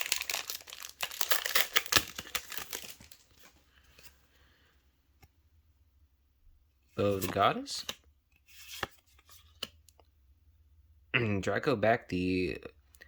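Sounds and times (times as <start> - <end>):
foil wrapper crinkling and tearing: 0.0 - 3.6.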